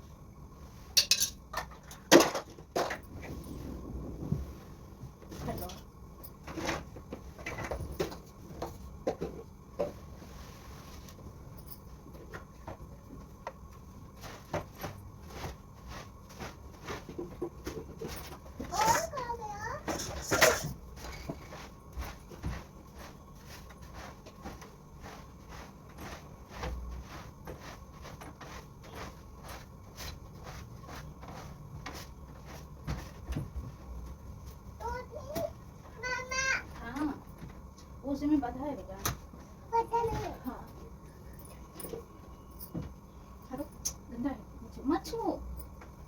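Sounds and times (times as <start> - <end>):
objects being handled and shifted: 0.5 - 46.0
low rumble: 3.0 - 5.2.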